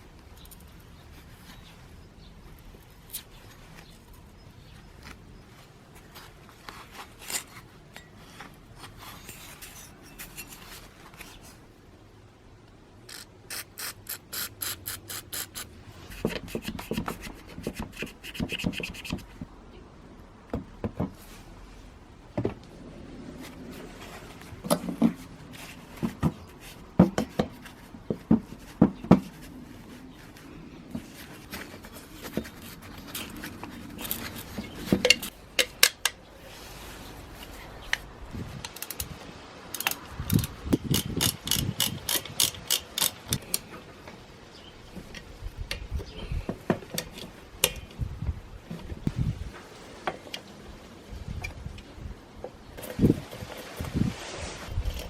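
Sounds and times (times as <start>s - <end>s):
rubbing and scraping on parts: 2.8s - 11.7s, 13.1s - 19.5s, 20.6s - 48.1s.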